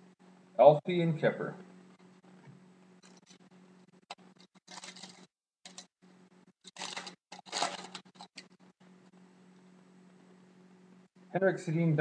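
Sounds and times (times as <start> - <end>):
trading cards rustling: 4.2 - 5.9, 6.6 - 8.5.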